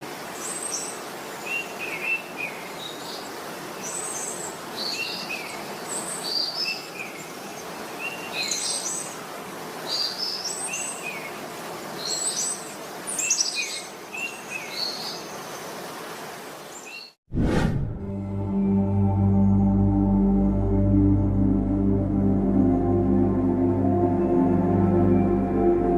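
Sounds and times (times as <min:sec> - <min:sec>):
outdoor background noise: 0:00.0 - 0:17.8.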